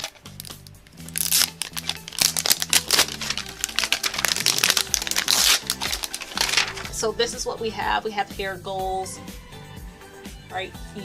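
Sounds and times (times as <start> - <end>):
plastic packaging crinkling and tearing: 0.0 - 7.0
background music low notes: 0.0 - 11.0.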